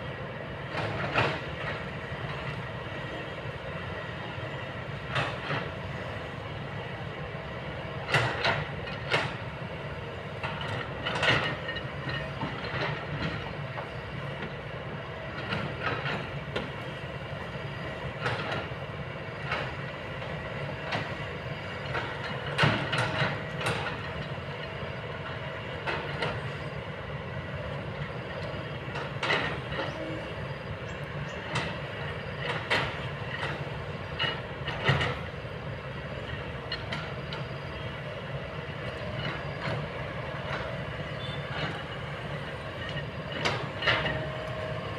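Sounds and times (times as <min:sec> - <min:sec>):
excavator engine humming: 0:00.0 - 0:44.9
excavator bucket clanking: 0:10.4 - 0:14.6, 0:20.8 - 0:24.6, 0:28.0 - 0:30.3, 0:30.9 - 0:35.4, 0:38.6 - 0:44.9.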